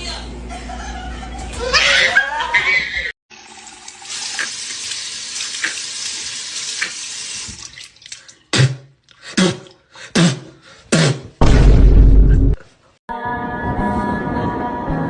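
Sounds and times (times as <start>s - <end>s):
tap water running: 3.3s - 8.4s.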